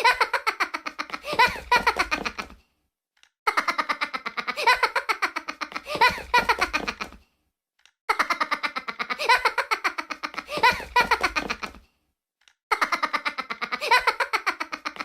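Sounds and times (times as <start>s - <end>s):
high-pitched giggling laughter: 0.0s - 2.6s, 3.5s - 7.2s, 8.1s - 11.8s, 12.7s - 15.0s.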